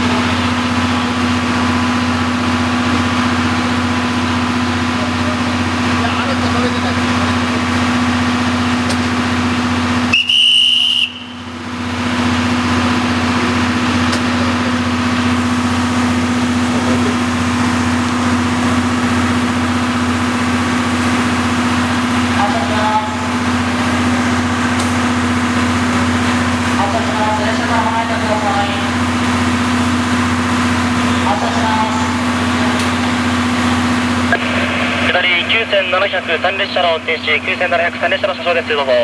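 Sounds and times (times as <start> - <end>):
diesel locomotive idling: 0.0 - 39.0
high locomotive whistle blast: 10.0 - 11.6.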